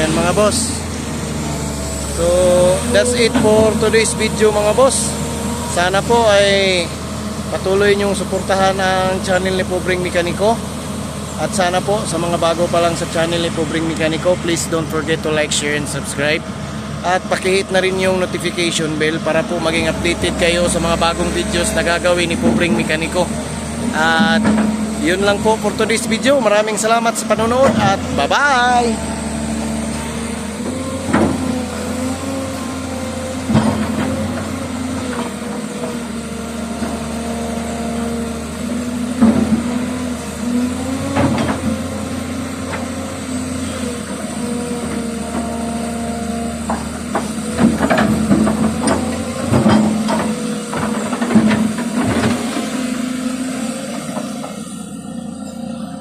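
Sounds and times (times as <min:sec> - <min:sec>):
excavator diesel engine running: 0:00.0 - 0:56.0
knocks and clanks: 0:24.0 - 0:24.8, 0:30.6 - 0:31.7, 0:33.4 - 0:36.0, 0:39.1 - 0:40.0, 0:40.9 - 0:41.9, 0:46.6 - 0:52.9.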